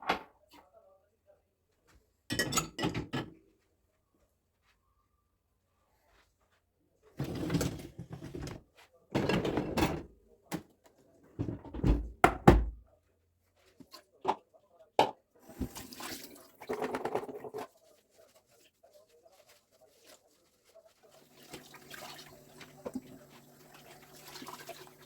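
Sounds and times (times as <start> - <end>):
objects knocking and clattering: 7.2 - 10.7, 11.4 - 12.8, 16.6 - 17.7.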